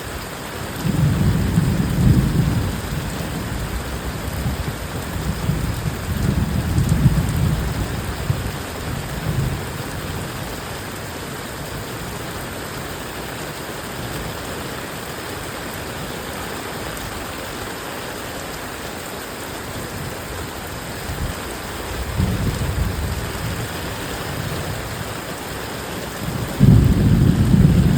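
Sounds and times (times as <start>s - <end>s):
heavy rain falling: 0.0s - 27.9s
thunder rumbling: 0.8s - 10.2s, 21.1s - 25.2s, 26.1s - 27.9s.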